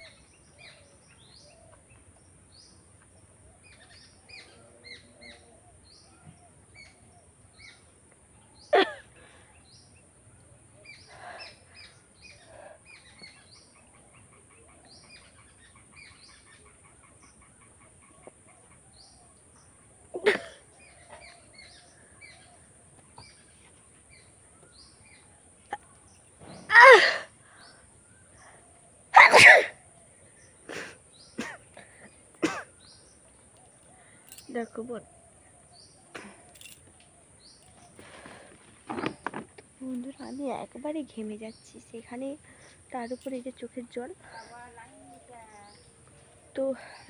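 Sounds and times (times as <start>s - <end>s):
small birds chirping: 0.0s - 47.0s
woman sneezing: 26.7s - 27.3s, 29.2s - 29.8s.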